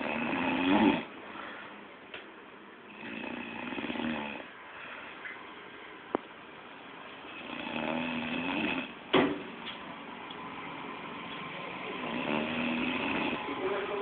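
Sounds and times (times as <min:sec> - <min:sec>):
person snoring: 0:00.0 - 0:01.1, 0:02.9 - 0:04.5, 0:07.3 - 0:09.0, 0:12.0 - 0:13.5.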